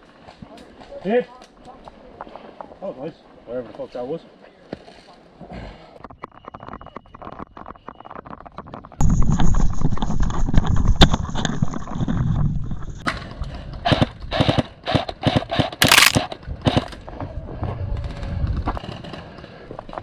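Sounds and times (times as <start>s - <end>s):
airsoft guns firing: 15.6s - 16.3s.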